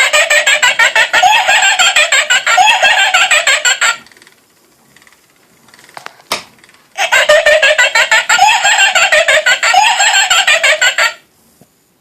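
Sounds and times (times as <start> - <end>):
toy speaker cackling laugh: 0.0 - 4.0, 7.0 - 11.2.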